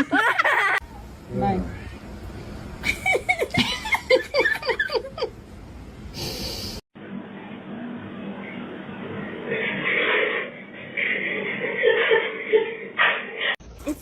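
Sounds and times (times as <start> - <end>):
person laughing: 2.8 - 5.3.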